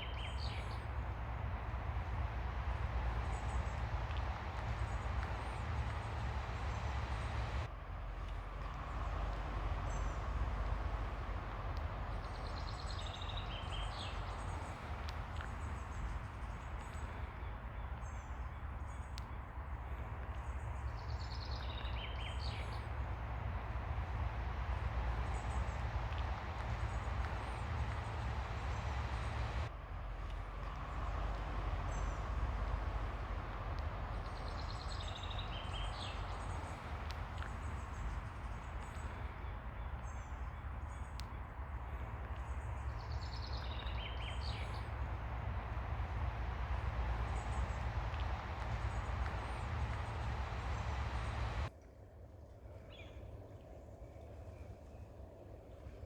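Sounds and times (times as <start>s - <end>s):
birds chirping: 0.0s - 51.7s
ocean waves washing on beach: 0.0s - 51.7s
descending trilled bird calls: 42.0s - 51.7s.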